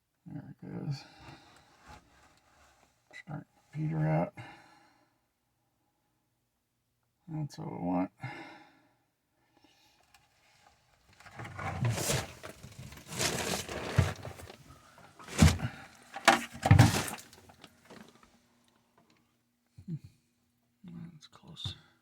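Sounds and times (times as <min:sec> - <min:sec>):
hard objects clattering: 0:11.3 - 0:18.2.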